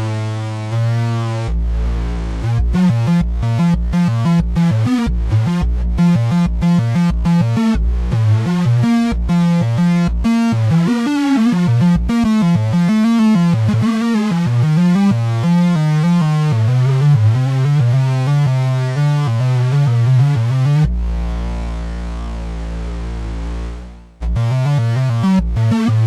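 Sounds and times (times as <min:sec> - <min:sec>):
buzzy synth note sequence: 0:00.0 - 0:26.0
low synth drone: 0:01.3 - 0:12.7, 0:19.3 - 0:25.8.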